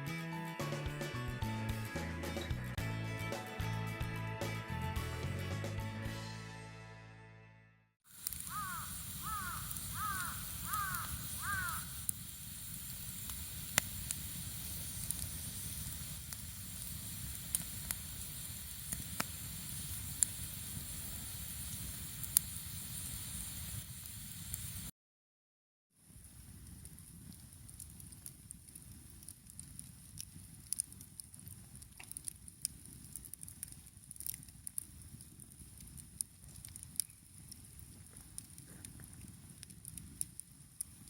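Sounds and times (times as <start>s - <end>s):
campfire hissing and crackling: 8.1s - 24.9s, 26.0s - 41.0s
bird calling: 8.4s - 12.0s.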